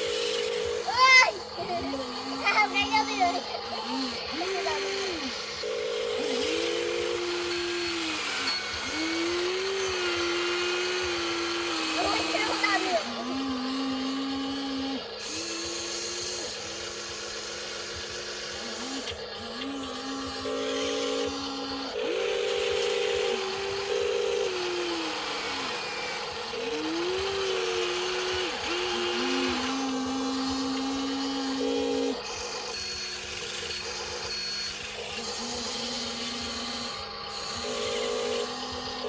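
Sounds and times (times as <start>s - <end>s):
small electric motors whining: 0.0s - 39.0s.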